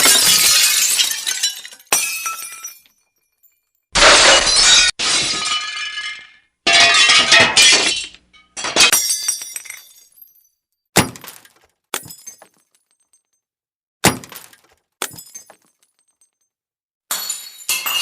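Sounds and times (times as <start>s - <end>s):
glass shattering: 0.0s - 13.4s, 14.0s - 16.5s, 17.1s - 18.0s.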